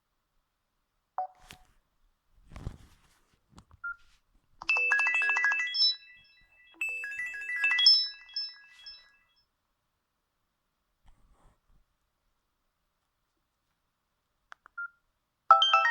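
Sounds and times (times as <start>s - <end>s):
phone ringtone beeping melody: 4.6s - 9.3s, 15.5s - 15.9s.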